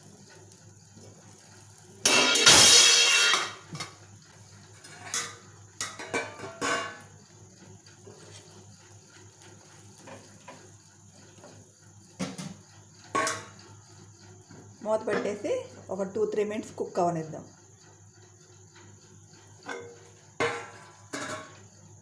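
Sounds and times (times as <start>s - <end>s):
utensil scraping a pan: 2.1s - 3.9s.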